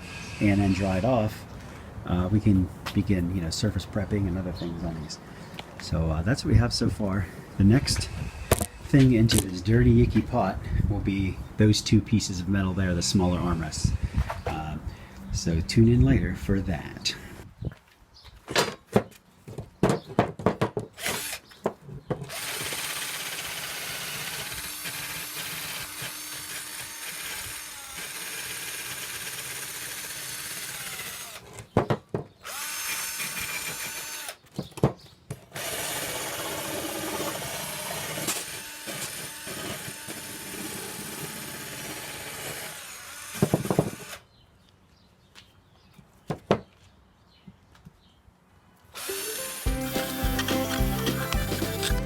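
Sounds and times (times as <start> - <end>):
electric drill running: 22.3 - 31.4, 32.4 - 34.4, 35.6 - 44.2, 49.0 - 52.0.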